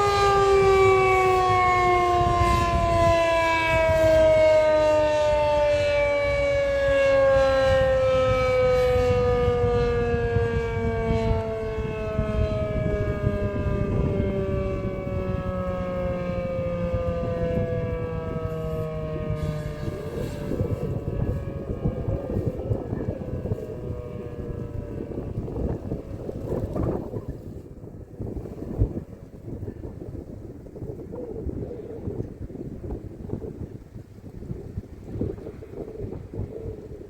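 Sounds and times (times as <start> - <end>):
warning siren winding down: 0.0 - 27.6
low rumbling noise: 0.0 - 36.9.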